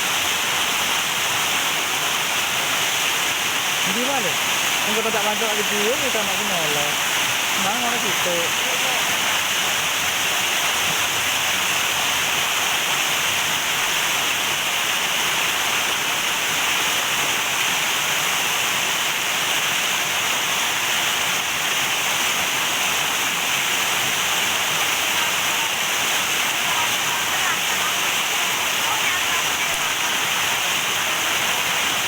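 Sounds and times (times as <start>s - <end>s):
river water flowing: 0.0s - 32.0s.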